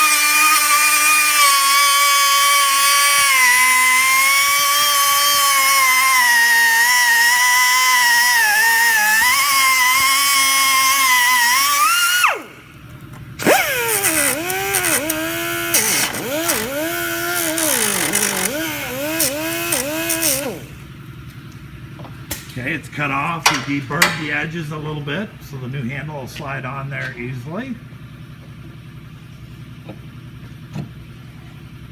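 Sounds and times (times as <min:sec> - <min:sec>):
cutoff tool cutting metal: 0:00.0 - 0:12.6, 0:13.4 - 0:20.8.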